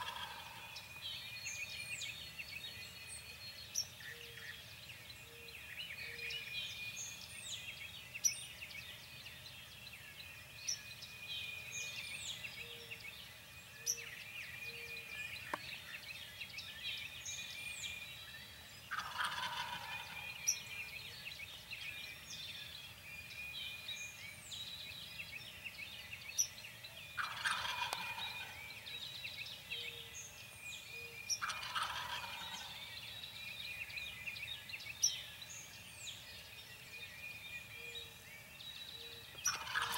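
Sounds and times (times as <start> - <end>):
turkey gobbling: 0.0 - 0.7, 18.9 - 20.3, 27.2 - 28.5, 31.4 - 32.8, 39.5 - 39.9
songbirds chirping and whistling: 0.0 - 39.9.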